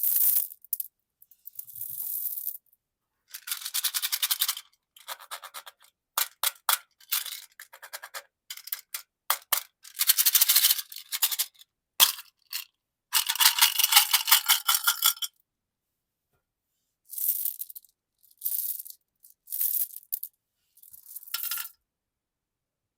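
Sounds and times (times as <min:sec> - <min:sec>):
candy rattling in plastic packaging: 0:13.2 - 0:15.3.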